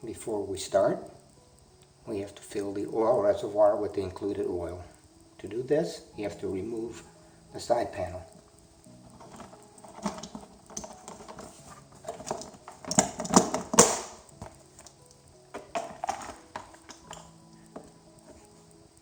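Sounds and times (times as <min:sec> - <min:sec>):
soft background music: 0:00.0 - 0:19.0
plastic clicks and knocks: 0:09.0 - 0:17.9.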